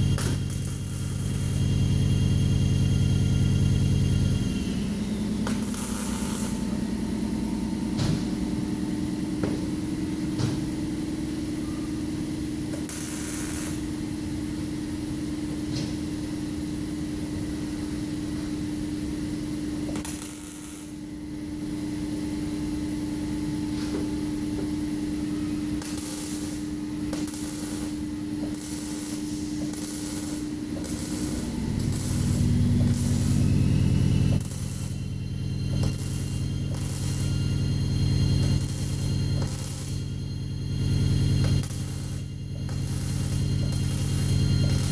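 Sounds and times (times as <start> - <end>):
welder crackling hiss: 0.0 - 1.8, 4.3 - 6.9, 12.6 - 44.9
welder humming: 0.0 - 44.9
arc sizzle bursts: 5.4 - 6.8, 12.6 - 14.2, 19.1 - 23.3, 24.2 - 44.9.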